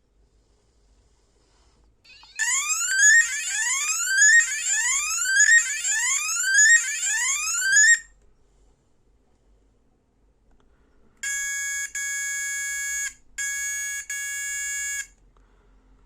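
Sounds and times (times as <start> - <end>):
electronic bike horn siren whoops: 2.1 - 8.0
steady shrill high tone: 2.1 - 8.0.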